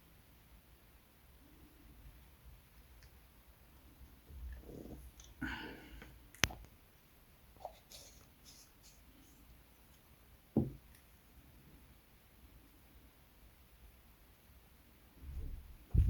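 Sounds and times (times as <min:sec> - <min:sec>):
dull knock: 0:10.6 - 0:10.8.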